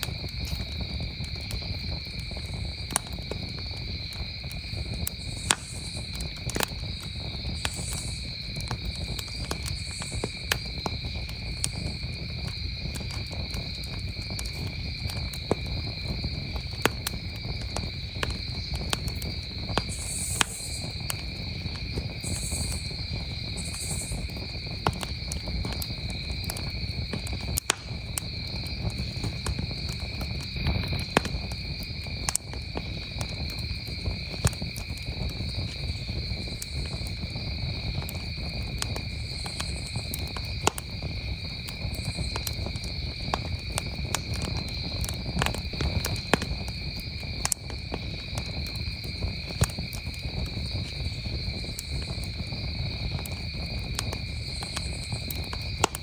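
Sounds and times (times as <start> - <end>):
campfire crackling and popping: 0.0 - 56.0
crickets trilling: 0.0 - 56.0.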